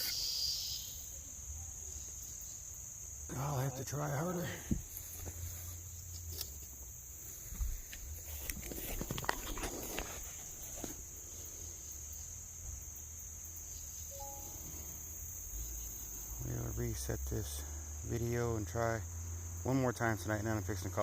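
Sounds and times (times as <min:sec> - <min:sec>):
crickets chirping: 0:00.0 - 0:21.0
faint clicks and rustles: 0:04.8 - 0:11.1.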